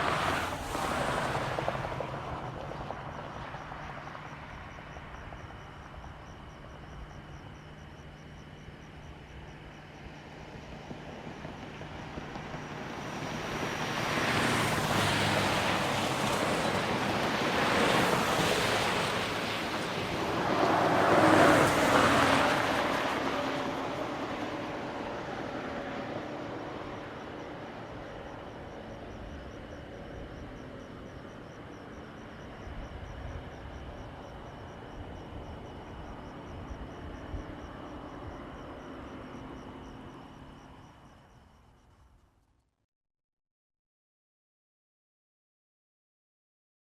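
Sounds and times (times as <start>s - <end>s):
vehicles passing by: 0.0s - 5.5s, 11.1s - 24.7s.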